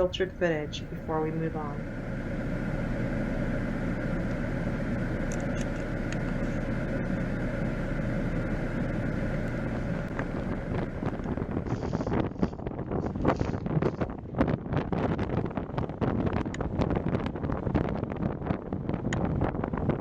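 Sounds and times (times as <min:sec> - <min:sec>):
strong wind blowing: 0:00.0 - 0:20.0.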